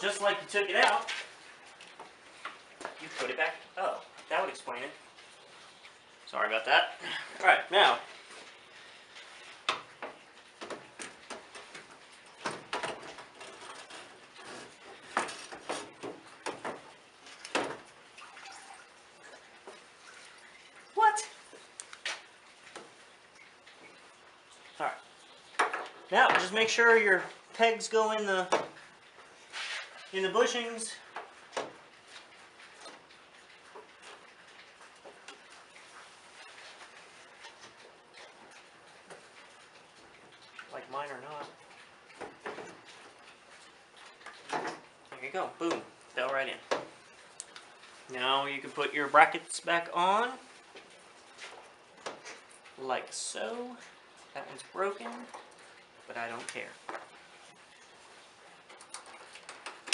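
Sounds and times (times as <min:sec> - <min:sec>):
knocks and scrapes of radiator: 0:09.2 - 0:18.0.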